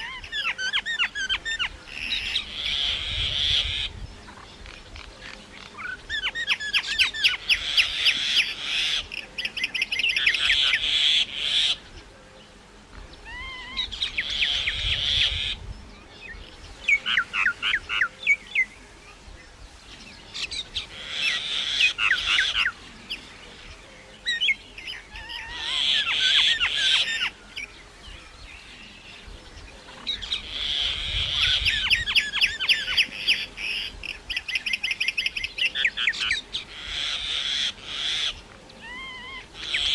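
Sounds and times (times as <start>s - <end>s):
myna chattering whistles and squawks: 29.8s - 39.9s.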